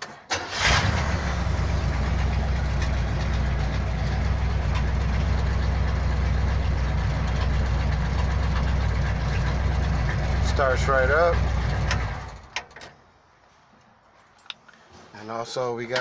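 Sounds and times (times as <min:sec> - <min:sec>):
car engine idling: 0:00.4 - 0:12.6.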